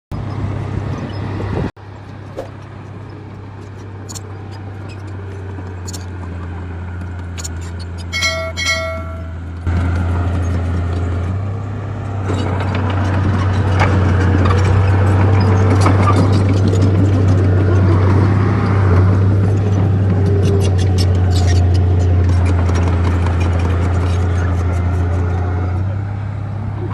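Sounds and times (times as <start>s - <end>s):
diesel engine droning: 0.1s - 26.9s
short beeps: 8.1s - 9.5s.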